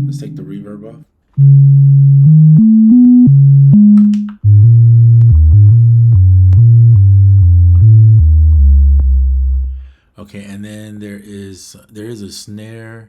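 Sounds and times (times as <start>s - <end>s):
synthesizer bass notes: 0.0s - 0.6s, 1.4s - 9.9s.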